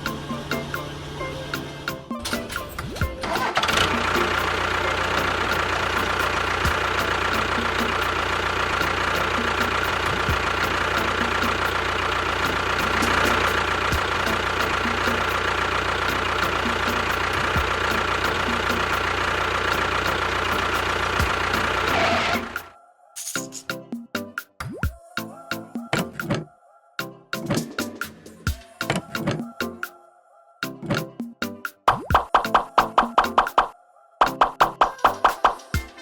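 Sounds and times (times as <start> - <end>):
engine running steadily: 0.0 - 22.7.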